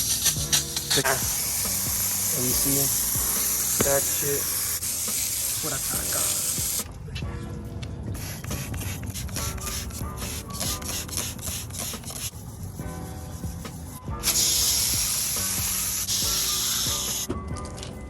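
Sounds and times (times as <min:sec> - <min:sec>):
water spraying hiss: 0:00.0 - 0:06.8, 0:14.2 - 0:17.3
background music: 0:00.0 - 0:18.0
scrubbing wheel rims: 0:08.3 - 0:17.3.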